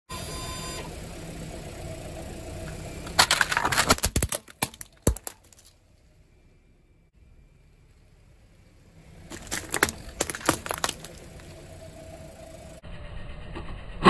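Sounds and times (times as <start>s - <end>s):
low engine rumble: 0.2s - 14.0s
tire crushing brittle objects: 2.7s - 5.9s, 9.2s - 12.6s.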